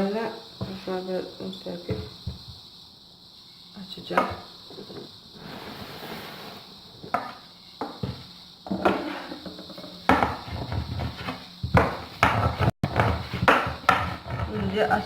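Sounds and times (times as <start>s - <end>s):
rolling pin knocking on table: 8.8s - 14.8s.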